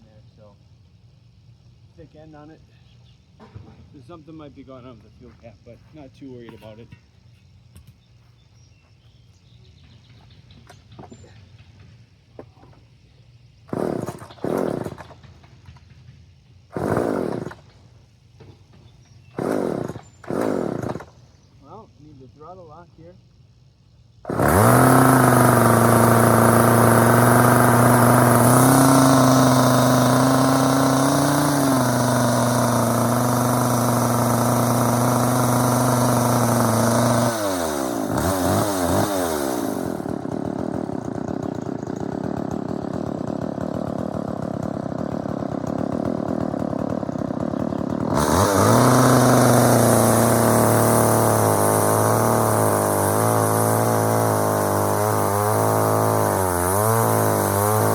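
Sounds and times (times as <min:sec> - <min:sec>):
chainsaw idling: 0:13.7 - 0:15.9, 0:16.6 - 0:18.8, 0:19.4 - 0:23.1, 0:24.2 - 0:57.9.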